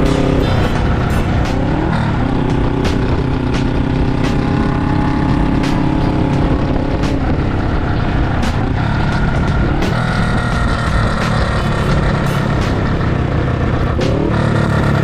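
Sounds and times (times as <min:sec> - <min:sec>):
exhaust cracks: 0:00.0 - 0:15.0
motorcycle engine: 0:00.0 - 0:15.0.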